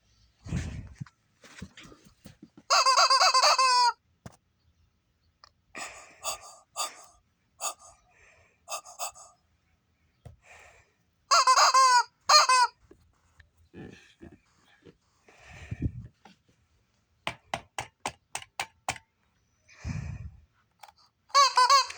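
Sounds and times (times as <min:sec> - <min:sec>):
chicken squawking: 0:02.7 - 0:04.0, 0:06.2 - 0:08.0, 0:08.7 - 0:09.4, 0:11.3 - 0:12.8, 0:21.3 - 0:21.9
soft chicken calls: 0:02.7 - 0:04.0, 0:08.7 - 0:09.4, 0:11.3 - 0:12.9, 0:21.3 - 0:21.9.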